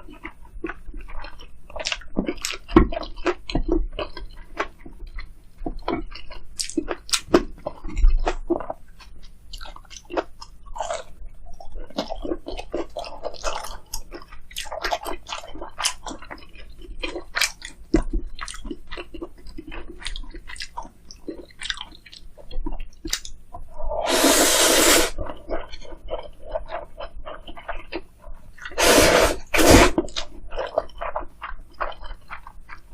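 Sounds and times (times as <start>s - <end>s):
soft squishy chewing: 0.0s - 23.9s, 25.1s - 32.9s
crunching bites of fried food: 28.6s - 32.9s.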